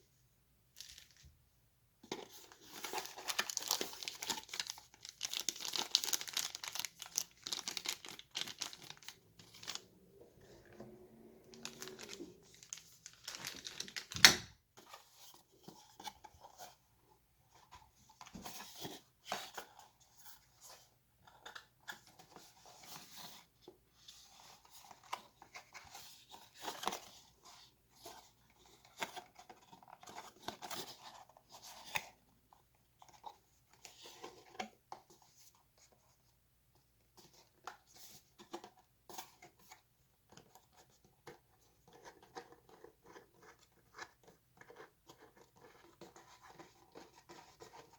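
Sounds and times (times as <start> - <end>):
cardboard and plastic rustling: 2.0 - 16.8.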